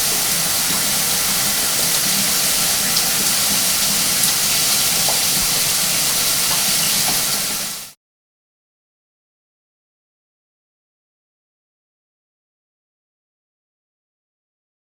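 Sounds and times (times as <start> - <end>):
water dripping: 0.0 - 7.9
shower water spraying: 0.0 - 8.0.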